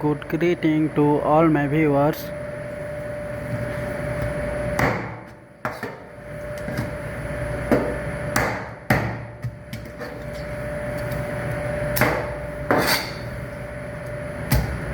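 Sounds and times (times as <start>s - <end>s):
steady hum: 0.0s - 14.9s
knife chopping on wooden board: 8.4s - 9.3s.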